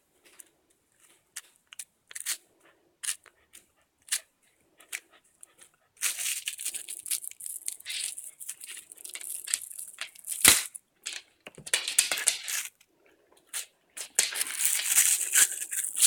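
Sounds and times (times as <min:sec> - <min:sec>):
crinkling rattle: 0:06.0 - 0:12.8, 0:13.5 - 0:16.0.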